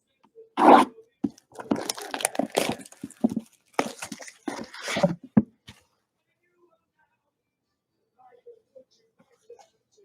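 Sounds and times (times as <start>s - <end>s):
plastic shrink wrap crinkling: 1.3s - 5.3s.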